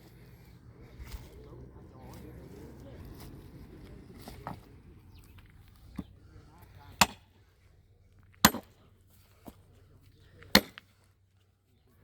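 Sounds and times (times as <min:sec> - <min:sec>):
sledgehammer striking steel wedge: 0:07.0 - 0:07.2, 0:08.4 - 0:08.8, 0:10.5 - 0:10.8.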